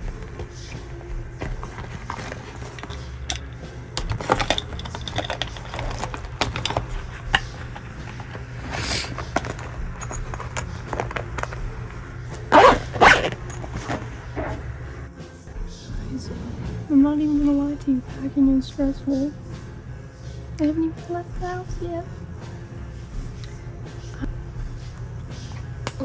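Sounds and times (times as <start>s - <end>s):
bags rustling while packed: 0.0s - 15.1s
steady low hum: 15.7s - 26.0s.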